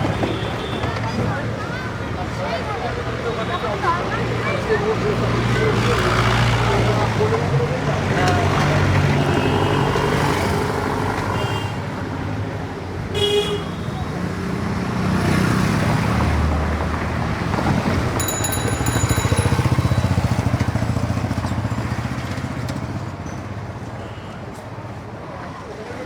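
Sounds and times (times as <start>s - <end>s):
crowd voices: 0.0s - 11.3s, 17.6s - 21.1s
traffic engines: 0.0s - 26.0s
small engine passing close: 18.0s - 23.1s
high ringing tone: 18.2s - 20.7s.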